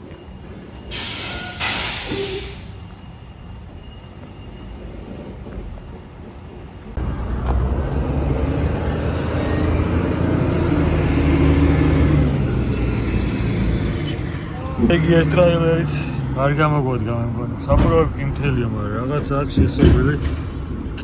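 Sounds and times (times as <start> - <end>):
truck engine rumbling: 6.8 - 21.0.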